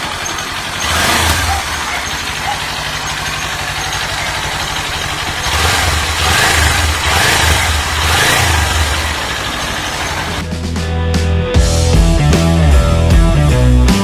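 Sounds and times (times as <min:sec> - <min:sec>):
motorcycle engine idling and revving: 0:00.0 - 0:10.8.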